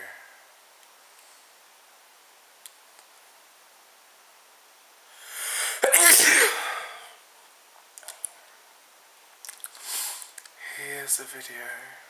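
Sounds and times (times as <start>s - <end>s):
person breathing in: 5.1s - 5.8s
person sneezing: 5.4s - 7.2s.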